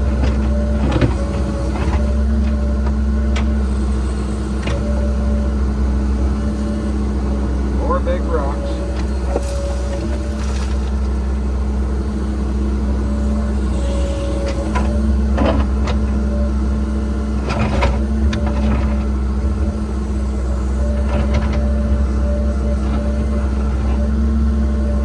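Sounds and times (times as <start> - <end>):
excavator diesel engine running: 0.0 - 25.0.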